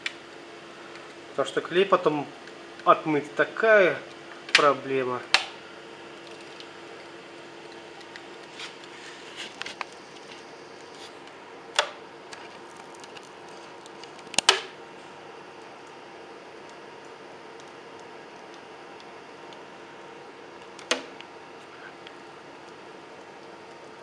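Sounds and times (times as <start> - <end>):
film peeling crackles and clicks: 0.0 - 2.9, 4.0 - 24.0
steady low hiss: 0.0 - 24.0.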